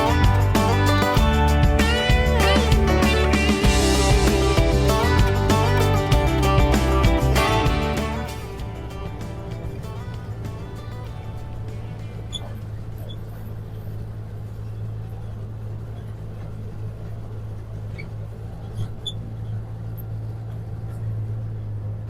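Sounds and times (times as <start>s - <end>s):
vehicle engine humming: 0.0s - 22.0s.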